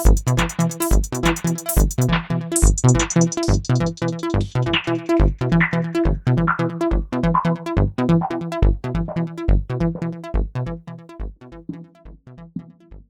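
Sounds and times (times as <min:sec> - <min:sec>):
repeating synth pattern: 0:00.0 - 0:05.6
kick drum beat: 0:00.0 - 0:06.2, 0:08.6 - 0:12.2.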